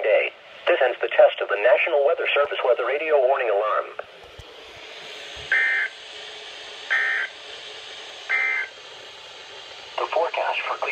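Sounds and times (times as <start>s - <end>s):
radio hiss: 0.0s - 4.1s, 8.0s - 8.8s, 9.9s - 10.9s
buzzy data bursts: 5.5s - 5.9s, 6.9s - 7.3s, 8.3s - 8.7s.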